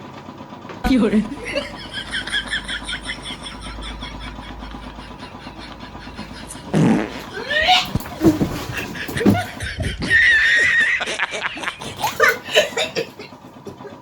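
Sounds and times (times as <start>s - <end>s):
steady low hum: 0.8s - 14.0s
fart sound effects: 6.5s - 9.4s.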